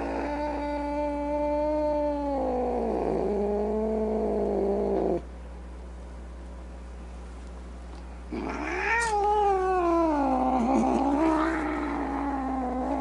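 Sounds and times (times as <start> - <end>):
low steady hum: 0.0 - 13.0
cat yowling: 8.3 - 13.0.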